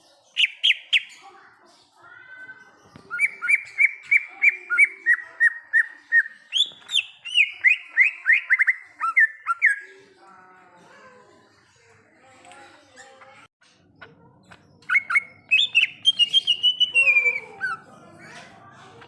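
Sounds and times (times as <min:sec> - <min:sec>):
bird whistling song: 0:00.4 - 0:01.2, 0:03.0 - 0:09.8, 0:14.8 - 0:17.9.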